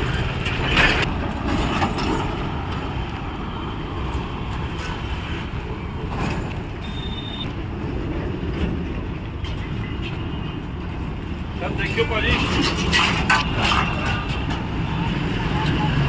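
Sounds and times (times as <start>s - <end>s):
street rumble: 0.0s - 16.0s
short high beep: 6.8s - 7.5s.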